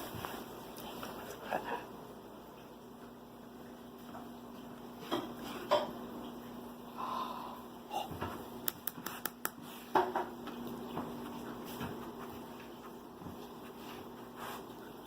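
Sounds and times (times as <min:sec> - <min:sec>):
faint steady hum: 0:00.0 - 0:15.0
dog sniffing and snuffling: 0:11.2 - 0:15.0.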